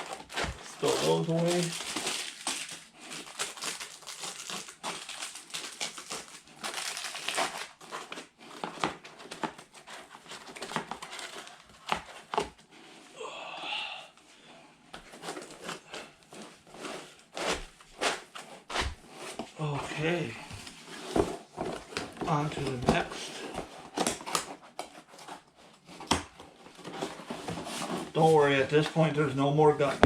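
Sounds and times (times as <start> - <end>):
packaging crinkling and rustling: 0.0 - 12.6.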